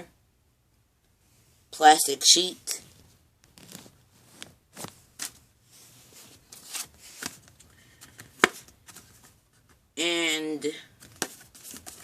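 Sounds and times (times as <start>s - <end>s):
plastic packaging crinkling: 3.4s - 5.0s.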